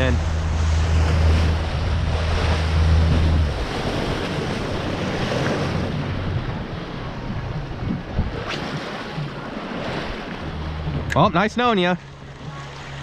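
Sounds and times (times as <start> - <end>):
wind across microphone: 0.0 - 11.2
boat engine droning: 0.0 - 13.0
water noise: 0.0 - 13.0.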